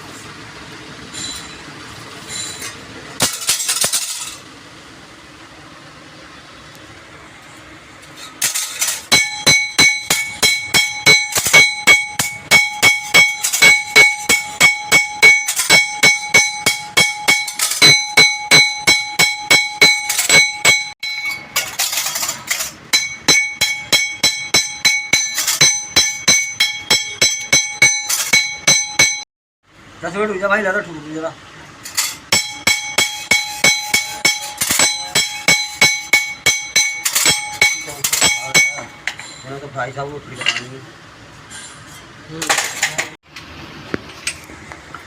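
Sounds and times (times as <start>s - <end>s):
hammer blows on metal: 8.4s - 21.6s, 22.9s - 29.2s.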